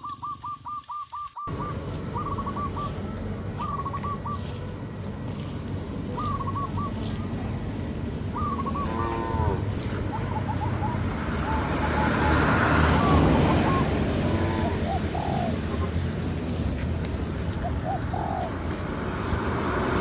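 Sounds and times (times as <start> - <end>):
bird chirping: 0.0 - 18.6
steady low rumble: 1.5 - 12.1
cow mooing: 8.6 - 10.0.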